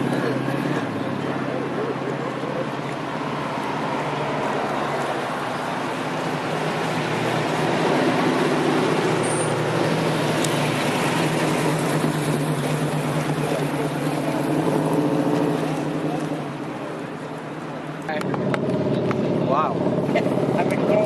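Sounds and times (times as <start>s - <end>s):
outdoor noise: 0.0s - 21.0s
vehicle engine running: 0.0s - 21.0s.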